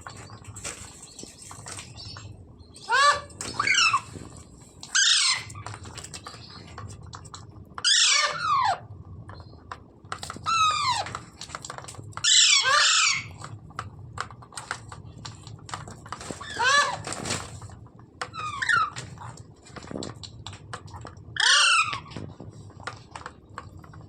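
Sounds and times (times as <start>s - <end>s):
parrot screeching: 2.8s - 4.1s, 4.9s - 5.7s, 7.8s - 8.9s, 10.4s - 11.1s, 12.2s - 13.4s, 16.4s - 17.2s, 18.3s - 19.0s, 21.4s - 22.2s.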